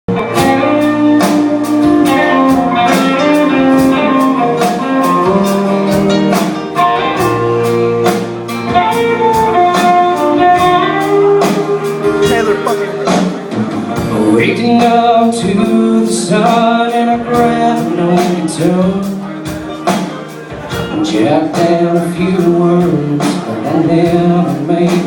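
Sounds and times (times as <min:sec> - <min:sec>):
guitars playing a melody: 0:00.1 - 0:14.3.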